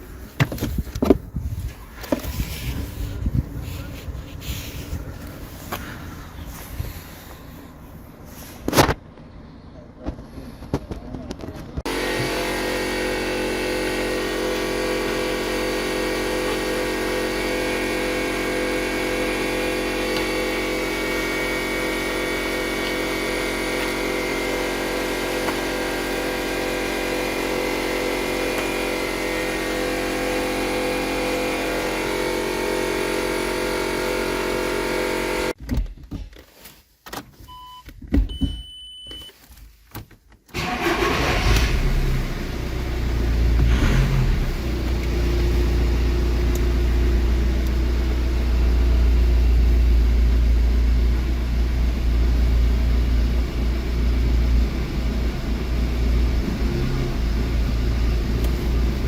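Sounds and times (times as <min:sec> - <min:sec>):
car engine idling: 0:00.0 - 0:11.2, 0:11.9 - 0:35.6, 0:40.5 - 0:59.0
short dashboard beeps: 0:37.5 - 0:39.4
engine cranking and starting: 0:40.5 - 0:45.4.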